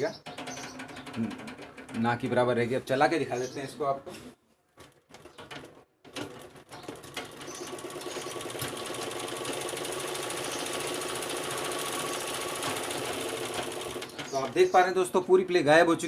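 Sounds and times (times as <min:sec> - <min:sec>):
treadle sewing machine running: 0:00.4 - 0:02.2, 0:06.1 - 0:14.6.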